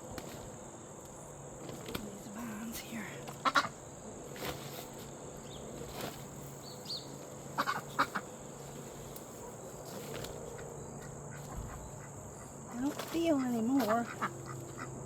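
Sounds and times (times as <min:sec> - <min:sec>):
chickens clucking: 0:03.2 - 0:15.0.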